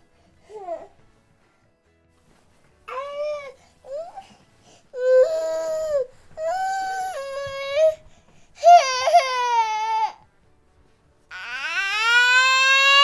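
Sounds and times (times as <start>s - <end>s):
infant crying: 2.9s - 8.0s, 8.6s - 10.2s, 11.3s - 13.0s.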